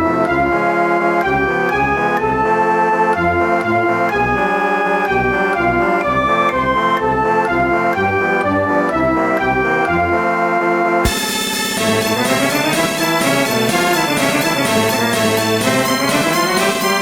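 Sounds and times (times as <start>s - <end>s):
circus keyboard music: 0.0s - 17.0s
bouncing bass: 11.0s - 17.0s.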